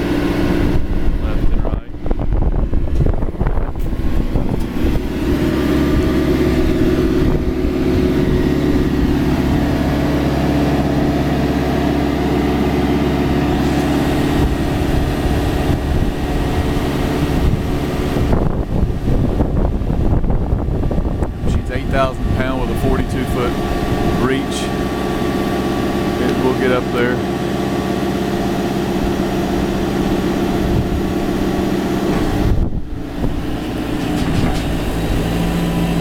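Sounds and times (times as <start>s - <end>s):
diesel engine revving: 0.0s - 36.0s.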